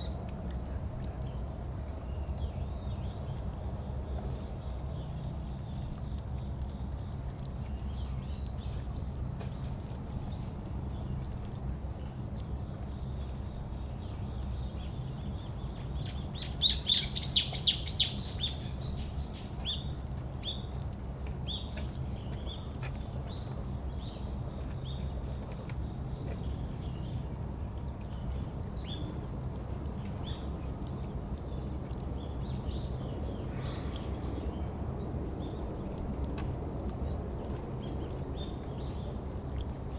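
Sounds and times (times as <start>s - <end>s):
high-pitched insect trill: 10.1s - 21.6s
songbird chirping: 16.1s - 19.9s.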